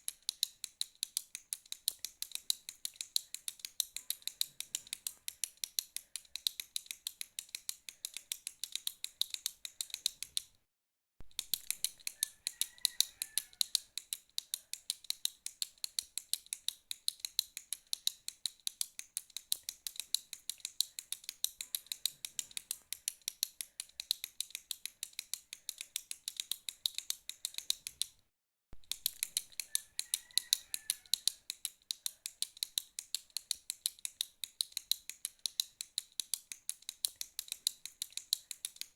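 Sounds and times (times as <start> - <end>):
retractable pen clicking: 0.0 - 10.6, 11.3 - 28.2, 28.8 - 38.9.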